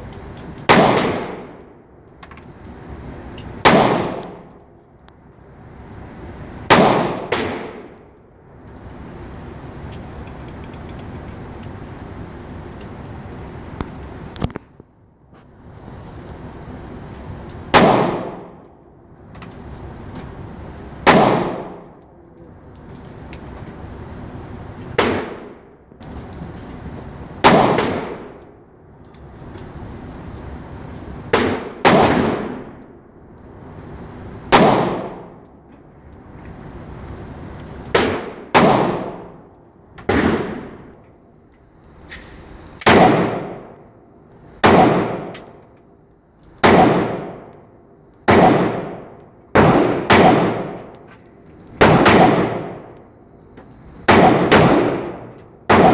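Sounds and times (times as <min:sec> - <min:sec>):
steady hiss: 0:00.0 - 0:46.2
pistol shots: 0:00.7 - 0:01.6, 0:03.6 - 0:04.5, 0:06.7 - 0:07.9, 0:17.7 - 0:18.5, 0:21.0 - 0:21.8, 0:25.0 - 0:25.6, 0:27.4 - 0:28.4, 0:31.3 - 0:32.8, 0:34.5 - 0:35.3, 0:37.9 - 0:39.3, 0:40.1 - 0:40.9, 0:42.8 - 0:43.7, 0:44.6 - 0:45.4, 0:46.6 - 0:47.5, 0:48.3 - 0:50.8, 0:51.8 - 0:52.9, 0:54.1 - 0:55.9.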